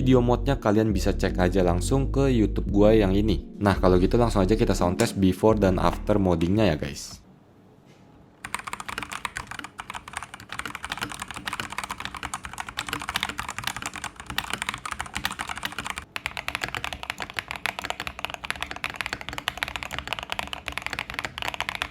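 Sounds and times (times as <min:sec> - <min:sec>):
fast mechanical keyboard typing: 0:08.4 - 0:21.9.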